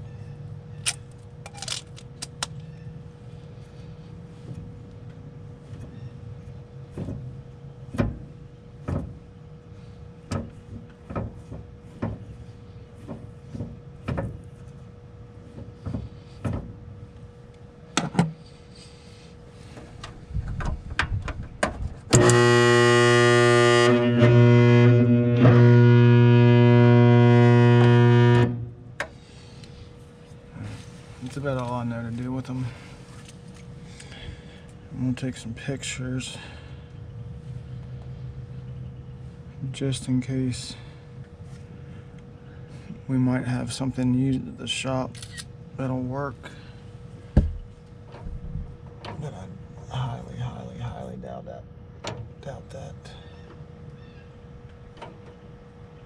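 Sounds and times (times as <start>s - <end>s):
handling clicks and knocks: 0.8s - 2.7s
loud electric motor buzz: 22.1s - 29.6s.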